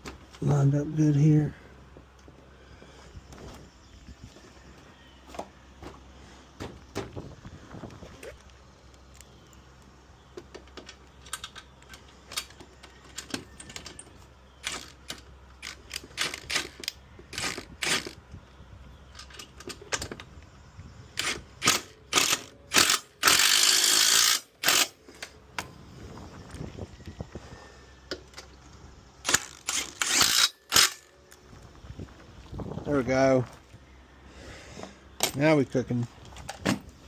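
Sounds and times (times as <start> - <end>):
ratchet clicking: 21.2 - 25.0, 29.2 - 31.1.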